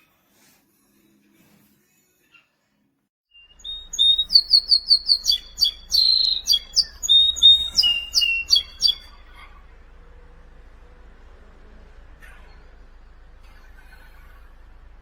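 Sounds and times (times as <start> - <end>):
small bird singing: 3.3 - 9.7.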